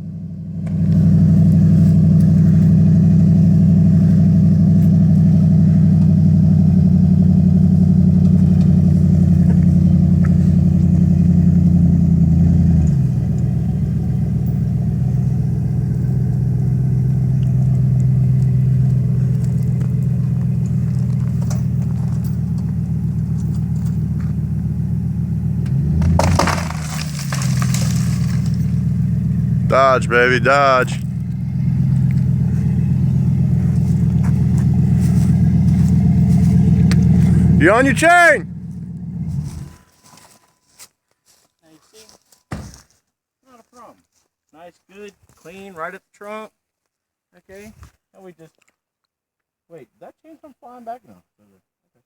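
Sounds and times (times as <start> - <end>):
truck engine running under load: 0.0 - 39.9.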